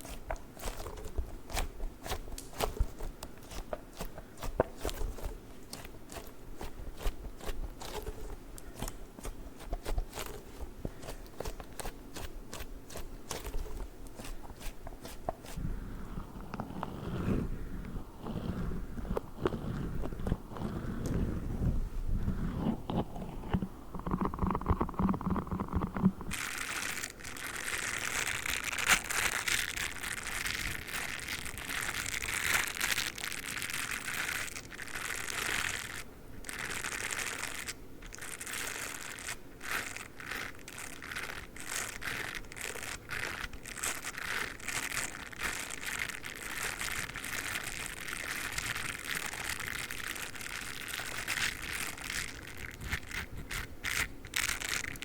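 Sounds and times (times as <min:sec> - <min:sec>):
toothbrush bristles scratching: 0:00.0 - 0:55.0
foam toy squeezed: 0:12.9 - 0:55.0.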